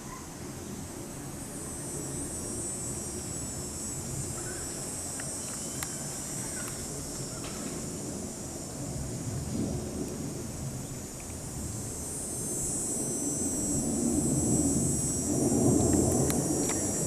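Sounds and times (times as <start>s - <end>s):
crickets chirping: 0.0s - 17.0s
faint ticks: 4.4s - 6.0s, 15.8s - 17.0s.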